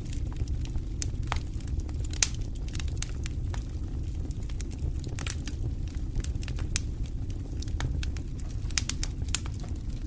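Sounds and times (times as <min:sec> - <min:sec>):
fire crackling and popping: 0:00.0 - 0:10.0
wood fire rumbling: 0:00.0 - 0:10.0.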